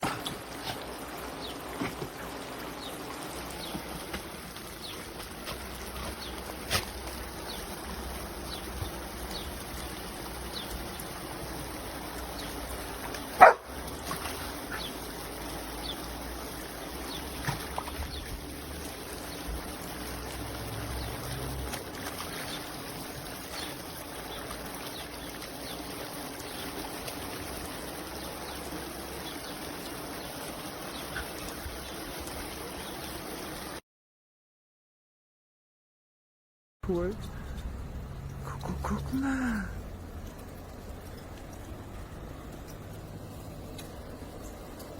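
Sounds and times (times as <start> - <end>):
water spraying and trickling: 0.0 - 33.8, 36.9 - 44.9
dog barking: 13.4 - 13.7.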